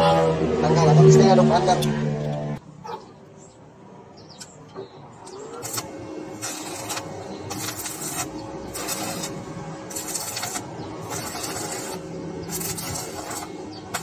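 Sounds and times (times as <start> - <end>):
welding machine humming: 5.0 - 14.0
welding arc crackling: 5.2 - 14.0.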